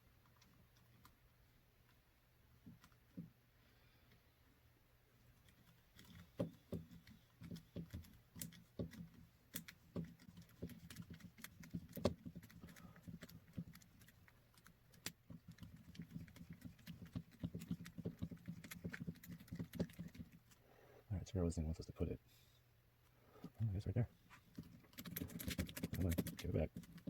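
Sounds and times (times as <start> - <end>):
plastic parts clicking and tapping: 5.4 - 20.5, 24.5 - 27.0.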